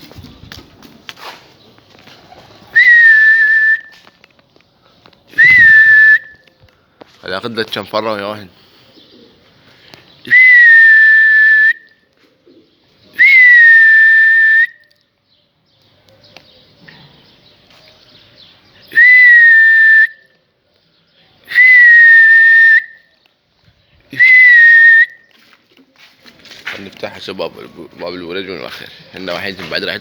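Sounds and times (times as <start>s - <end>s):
loud high whistle blasts: 2.8s - 4.0s, 5.4s - 6.5s, 10.3s - 11.9s, 13.2s - 14.8s, 18.9s - 20.3s, 21.5s - 23.1s, 24.2s - 25.2s.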